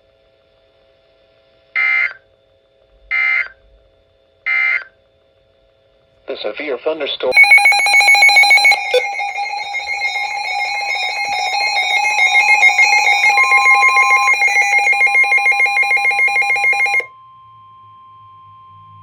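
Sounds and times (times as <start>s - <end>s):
faint steady tone: 7.3s - 17.1s
pulsing two-pitch alarm tone: 7.3s - 17.1s.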